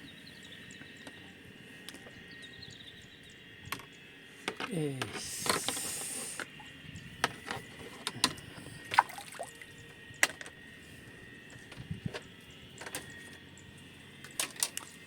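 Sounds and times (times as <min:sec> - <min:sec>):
trickling water: 0:08.9 - 0:09.7.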